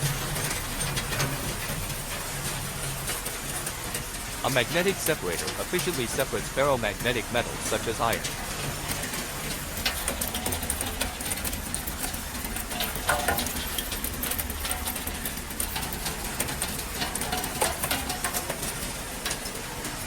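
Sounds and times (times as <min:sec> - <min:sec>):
sharp ticks and clacks: 0:00.0 - 0:20.0
machinery low hum: 0:04.2 - 0:09.8.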